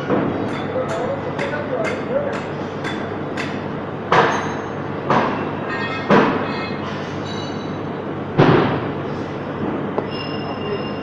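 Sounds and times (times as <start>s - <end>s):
loud metallic clanks: 0.0s - 9.0s
workshop noise: 0.0s - 11.0s.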